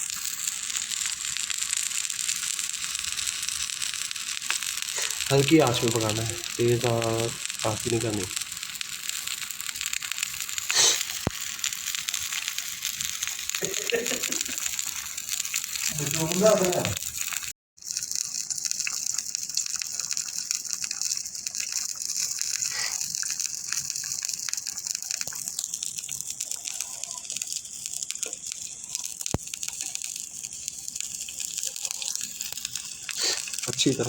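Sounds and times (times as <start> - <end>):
sugar sizzling in ghee: 0.0 - 34.0.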